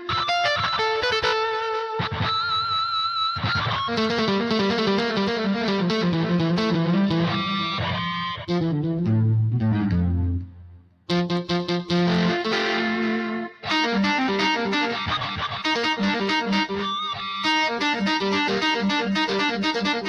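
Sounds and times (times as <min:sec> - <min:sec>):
keyboard playing notes and chords: 0:00.0 - 0:20.0
low bass line: 0:08.5 - 0:13.5.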